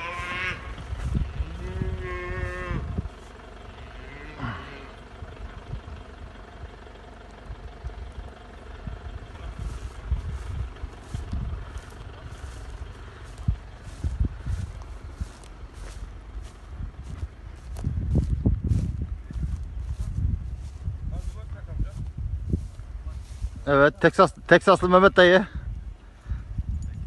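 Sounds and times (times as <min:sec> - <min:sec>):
low thumps and rumble: 0:00.0 - 0:23.7
animal crying: 0:01.5 - 0:02.9.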